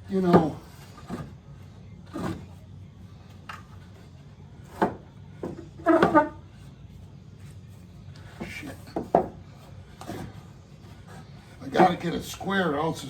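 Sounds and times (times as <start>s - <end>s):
wood creaking against wood: 0.1s - 1.4s, 2.0s - 2.6s, 4.6s - 6.6s, 8.2s - 12.5s
wooden boards knocking: 4.7s - 6.4s, 8.5s - 9.4s.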